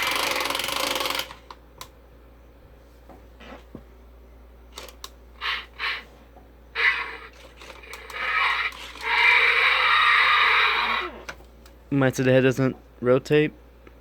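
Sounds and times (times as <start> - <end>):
toy robot motors and gears whirring: 0.0 - 1.6, 4.7 - 6.2, 6.8 - 11.4.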